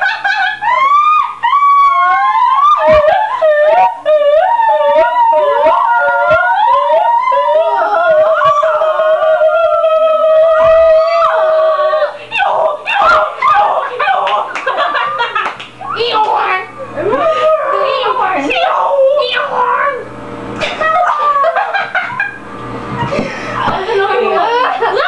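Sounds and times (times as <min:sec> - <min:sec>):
girl making howl-like noises: 0:00.7 - 0:14.5, 0:17.0 - 0:20.1.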